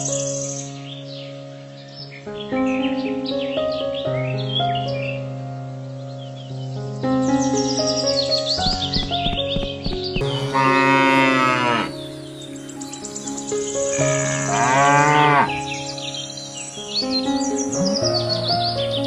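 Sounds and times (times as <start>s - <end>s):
background music: 0.0s - 19.0s
cow mooing: 10.2s - 12.0s, 13.9s - 15.6s.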